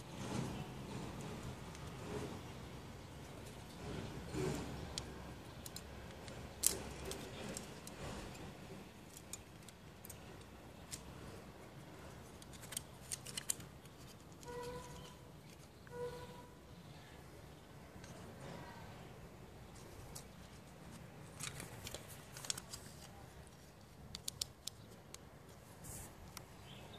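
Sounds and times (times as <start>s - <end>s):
plastic parts clicking and rustling: 0.2s - 16.1s, 19.7s - 26.5s
short squeaky tones: 14.4s - 16.6s.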